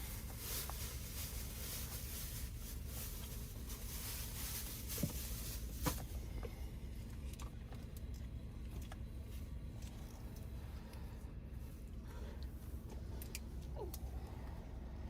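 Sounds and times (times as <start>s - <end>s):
car cabin rumble: 0.0s - 10.0s.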